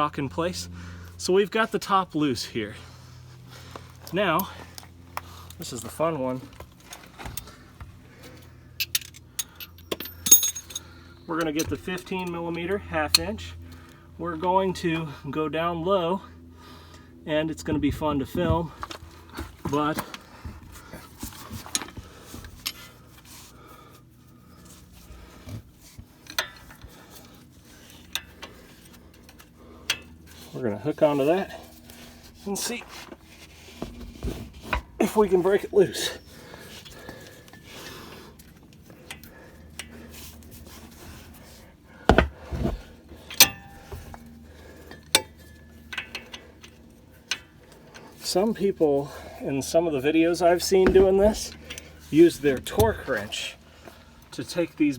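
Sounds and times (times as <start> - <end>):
faint steady hum: 0.0 - 54.9
metal tool clicks and knocks: 43.3 - 44.1.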